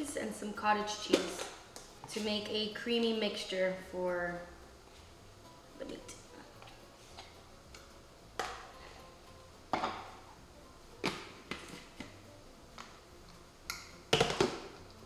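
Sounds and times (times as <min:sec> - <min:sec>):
kitchen utensils clinking: 0:09.7 - 0:10.3.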